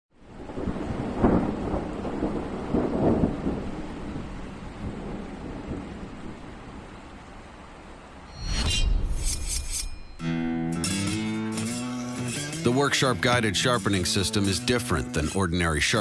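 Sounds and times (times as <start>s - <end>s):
rain hissing: 0.2s - 8.3s
thunder rumbling: 0.3s - 7.4s
sharp ringing hit: 8.3s - 12.3s.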